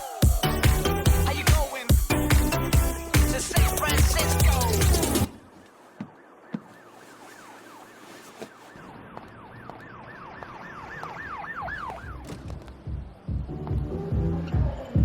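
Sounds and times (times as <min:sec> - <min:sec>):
dance-pop track: 0:00.0 - 0:05.3
falling siren-like wail: 0:05.3 - 0:12.2.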